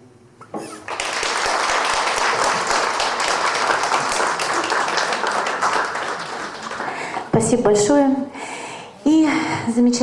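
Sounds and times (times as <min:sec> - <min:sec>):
audience applauding: 0:00.6 - 0:07.3.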